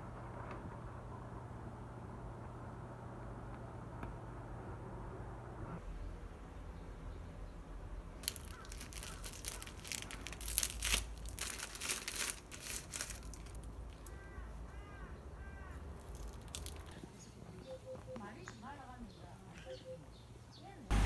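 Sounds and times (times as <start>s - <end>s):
bird chirping: 5.8s - 9.8s, 13.6s - 21.0s
wrapping crinkling and rustling: 8.2s - 14.4s, 16.0s - 17.1s.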